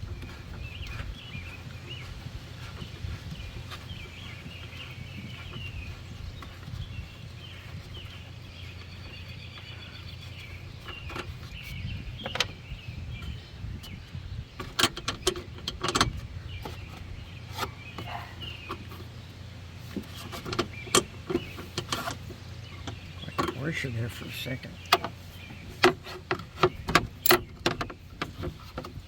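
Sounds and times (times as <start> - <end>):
steady low rumble: 0.0 - 20.1.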